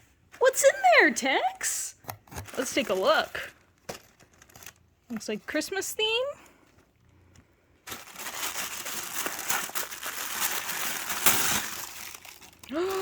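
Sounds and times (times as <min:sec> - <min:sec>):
packaging crinkling and rustling: 0:02.1 - 0:05.8, 0:07.8 - 0:13.0.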